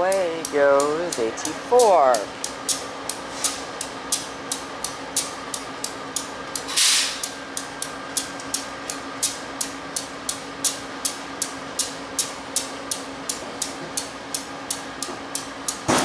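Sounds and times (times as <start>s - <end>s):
air hissing burst: 6.7s - 7.3s.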